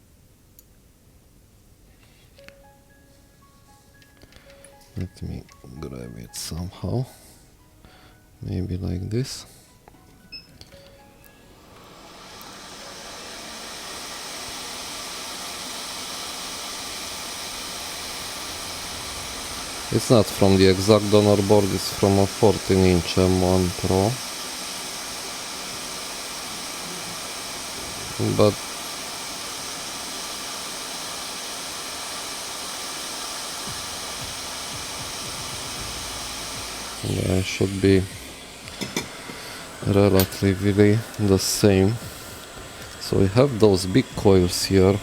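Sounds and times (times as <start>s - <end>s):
hot air station hissing: 10.8s - 45.0s.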